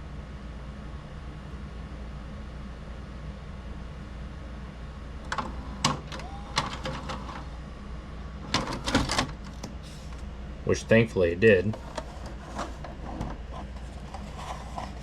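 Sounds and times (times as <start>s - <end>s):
tape mechanism clicking and clacking: 5.2s - 7.4s, 8.5s - 9.8s.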